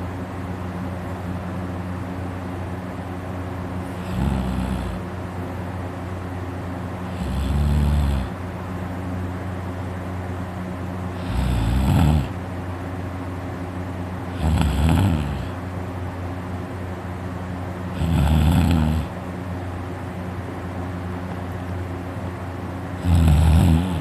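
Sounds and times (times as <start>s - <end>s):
steady hum: 0.0s - 24.0s
man snoring loudly: 3.9s - 5.0s, 7.0s - 8.4s, 11.1s - 12.4s, 14.3s - 15.6s, 17.9s - 19.2s, 23.0s - 24.0s.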